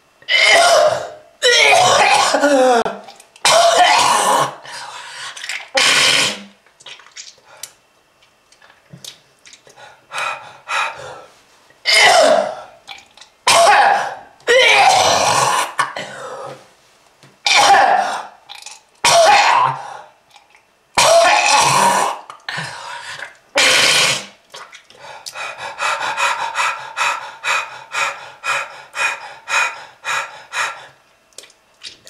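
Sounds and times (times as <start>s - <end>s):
person clearing throat: 0.3s - 4.6s, 11.9s - 12.6s, 13.5s - 16.6s, 17.5s - 18.3s, 21.0s - 22.2s
person coughing hard: 0.3s - 4.6s, 5.8s - 6.5s, 11.9s - 12.6s, 13.5s - 16.4s, 17.5s - 18.3s, 19.0s - 19.8s, 21.0s - 22.2s, 23.6s - 24.3s.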